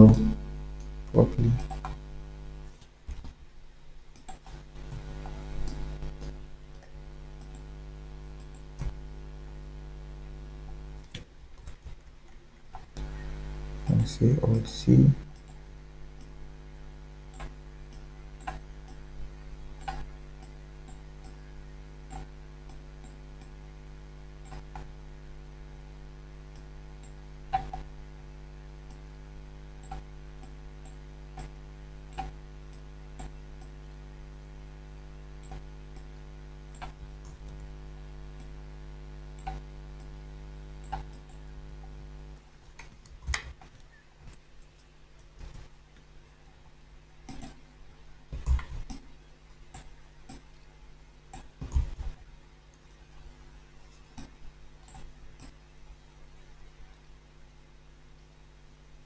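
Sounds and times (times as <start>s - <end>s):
computer mouse clicking: 0.0s - 2.1s, 4.1s - 7.8s, 8.4s - 9.1s, 15.2s - 15.6s, 16.2s - 16.4s, 17.3s - 23.6s, 24.4s - 25.0s, 26.5s - 27.9s, 29.8s - 33.8s, 35.4s - 37.7s, 39.4s - 40.2s, 40.8s - 46.1s, 47.2s - 47.7s, 48.3s - 50.6s, 51.3s - 53.3s, 53.9s - 55.6s
steady electrical hum: 0.0s - 59.0s.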